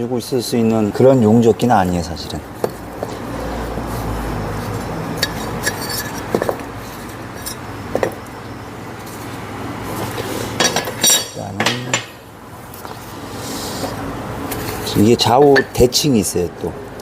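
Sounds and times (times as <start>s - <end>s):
steel plates clinking: 5.2s - 6.3s, 10.6s - 12.3s.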